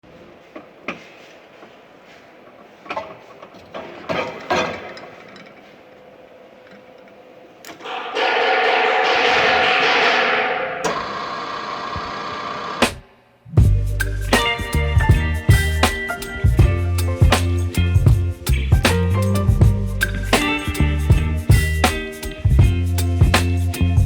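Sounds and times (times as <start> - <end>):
drill boring into steel: 10.8 - 12.8.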